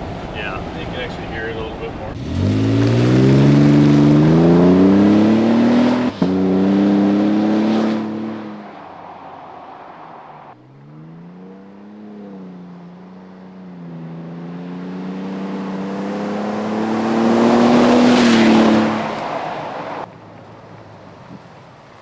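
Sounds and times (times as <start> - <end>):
truck engine revving: 0.0 - 20.1.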